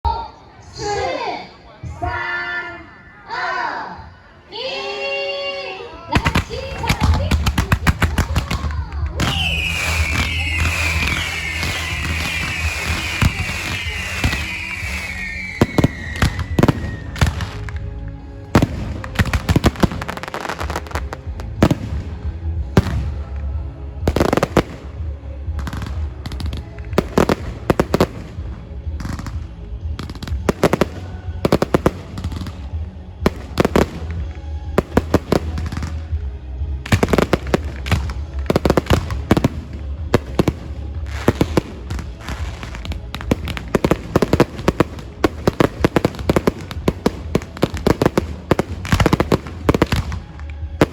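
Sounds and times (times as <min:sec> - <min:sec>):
firework bangs: 0:06.2 - 0:17.9, 0:18.5 - 0:23.4, 0:25.5 - 0:36.2, 0:36.8 - 0:50.9
whistling firework shells: 0:08.3 - 0:17.8.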